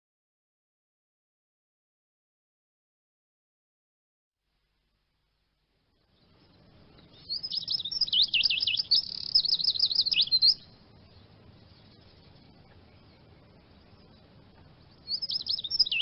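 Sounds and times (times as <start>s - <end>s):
faint steady hiss: 4.4s - 16.0s
bird singing twittering phrase: 6.0s - 16.0s.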